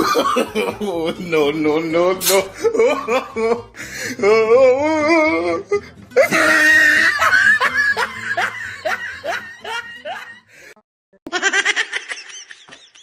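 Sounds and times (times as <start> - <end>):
person laughing: 2.2 - 4.6, 6.2 - 10.4, 11.3 - 13.0.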